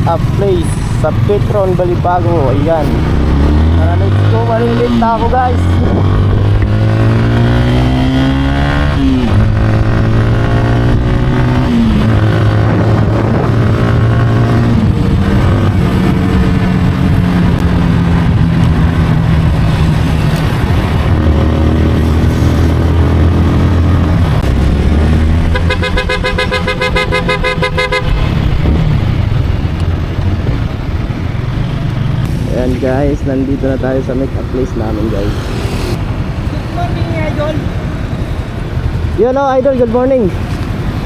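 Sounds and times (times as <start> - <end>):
wind rush: 2.2 - 31.6
vehicle horn: 25.5 - 28.4.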